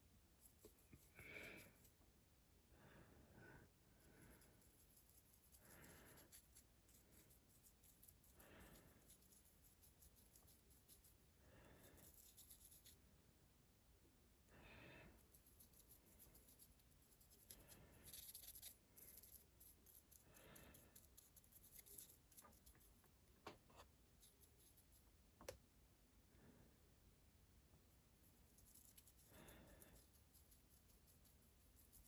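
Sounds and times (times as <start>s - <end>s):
paint brush strokes on metal: 4.0s - 13.0s, 15.2s - 23.0s, 28.2s - 32.0s.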